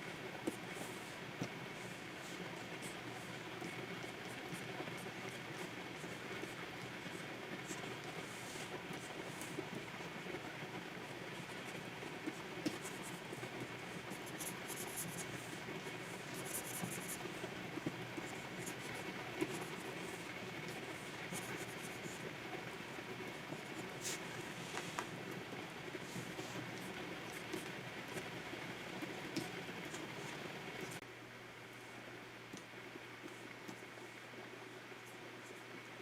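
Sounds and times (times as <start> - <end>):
pen nib scratching on screen: 12.6 - 15.4, 16.3 - 17.2.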